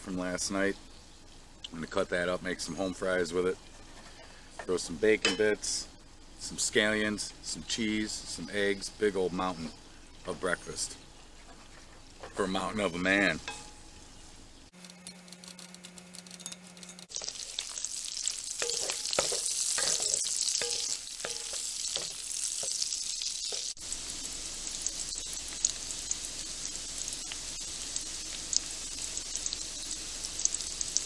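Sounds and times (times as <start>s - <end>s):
stirring and scraping in pan: 14.7s - 23.8s
potatoes sizzling in oil: 14.7s - 31.0s.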